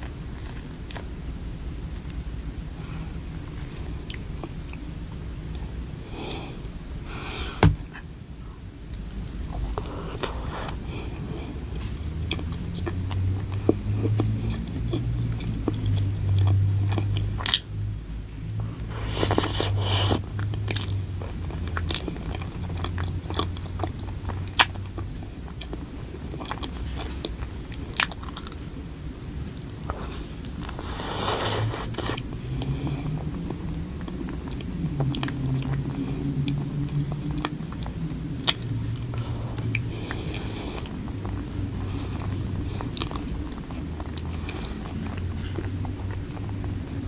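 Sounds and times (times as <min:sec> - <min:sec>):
person chewing food: 0:09.0 - 0:17.9, 0:18.5 - 0:47.0.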